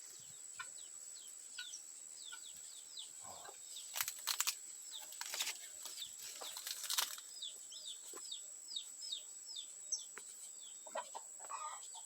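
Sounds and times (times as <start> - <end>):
rustling crackles: 3.8 - 7.3.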